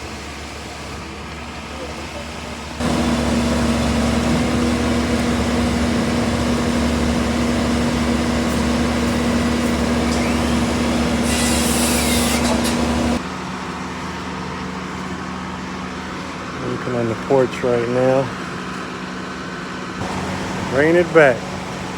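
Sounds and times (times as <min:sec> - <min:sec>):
heavy diesel engine running: 0:00.0 - 0:21.9
burst of hiss: 0:10.1 - 0:13.2.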